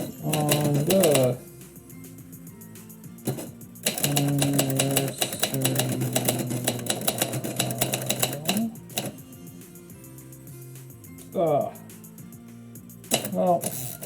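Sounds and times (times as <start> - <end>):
typewriter keys clicking: 0.0 - 1.4, 3.2 - 9.2, 13.1 - 14.0.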